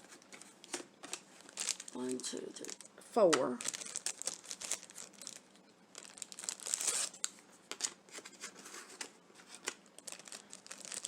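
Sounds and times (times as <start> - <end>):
packaging crinkling and rustling: 0.0 - 11.0.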